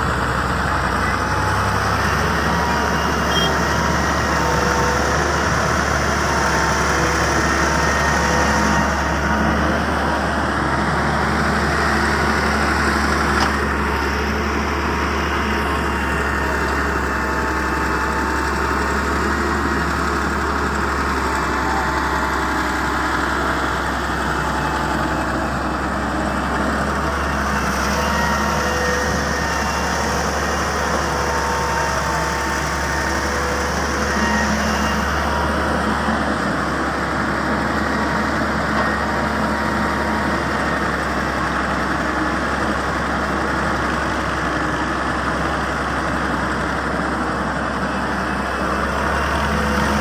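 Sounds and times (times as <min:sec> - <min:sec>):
excavator diesel engine running: 0:00.0 - 0:50.0.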